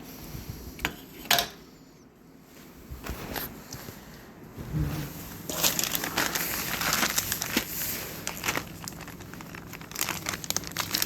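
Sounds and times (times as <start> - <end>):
crinkling and rustling: 2.5 - 11.0.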